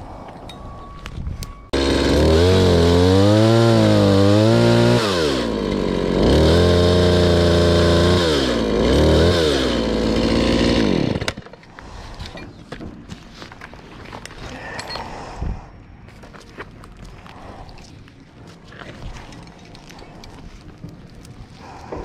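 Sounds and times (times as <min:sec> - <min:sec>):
chainsaw cutting limbs: 0:01.7 - 0:11.6.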